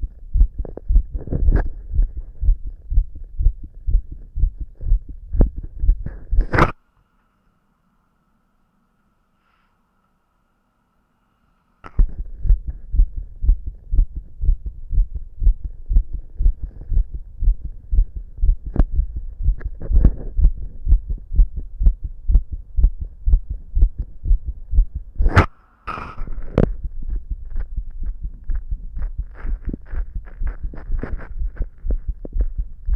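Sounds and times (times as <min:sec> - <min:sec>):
fast heartbeat thumps: 0:00.0 - 0:06.6, 0:11.9 - 0:25.5, 0:26.2 - 0:32.9.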